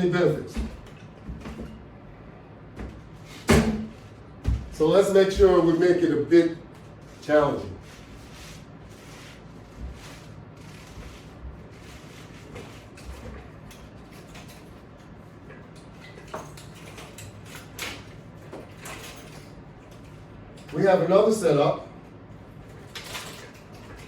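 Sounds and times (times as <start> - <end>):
low room hum: 0.0 - 24.0
sliding scrapes: 7.0 - 13.3.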